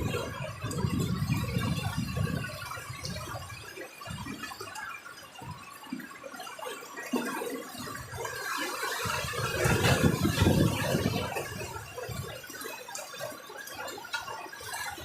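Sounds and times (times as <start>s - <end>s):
heavy rain patter: 0.0s - 4.2s
strong wind rumble: 0.0s - 4.3s, 9.0s - 12.4s.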